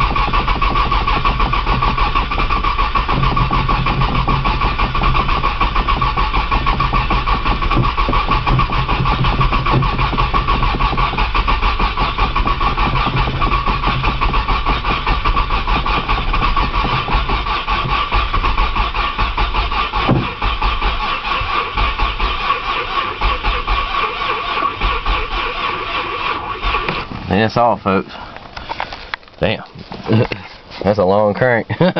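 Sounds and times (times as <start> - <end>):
starter motor cranking engine: 0.0 - 30.7.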